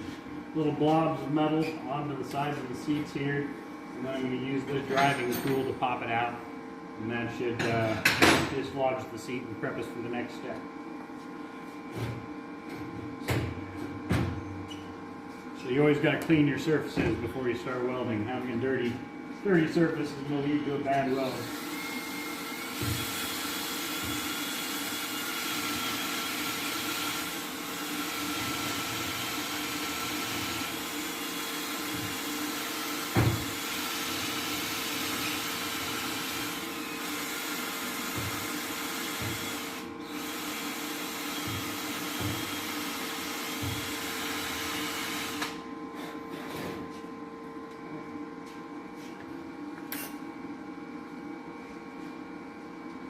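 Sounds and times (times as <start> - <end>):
low shop hum: 0.0 - 53.0
power tool whirring: 21.2 - 45.6.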